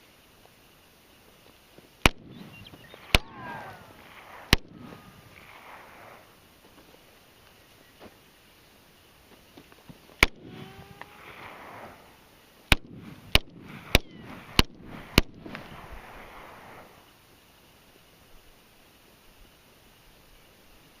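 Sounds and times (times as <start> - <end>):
pistol shots echoing: 2.0 - 6.4, 12.7 - 15.7.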